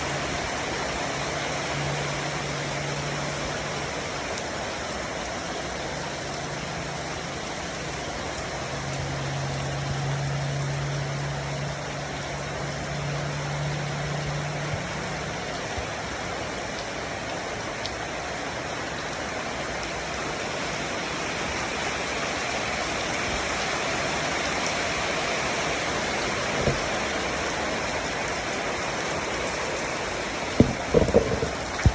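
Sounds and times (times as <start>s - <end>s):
heavy rain pouring: 0.0s - 31.9s
sharp knocks: 30.6s - 31.9s.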